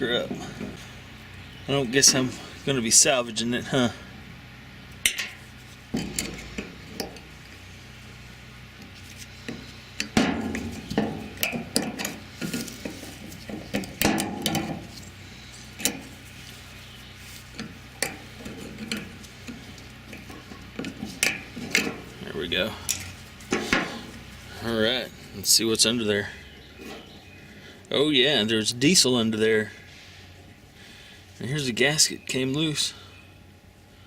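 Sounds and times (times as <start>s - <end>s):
hand tools scraping and clinking metal: 5.0s - 7.6s, 8.8s - 24.6s.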